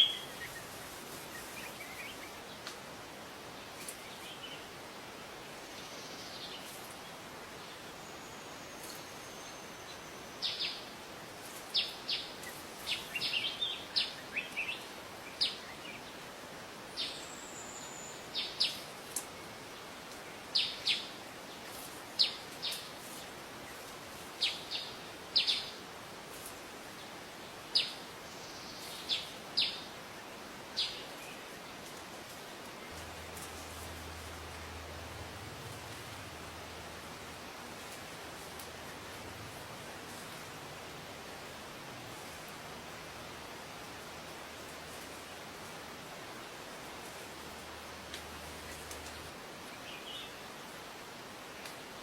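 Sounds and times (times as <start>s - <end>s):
steady hiss: 0.0s - 52.0s.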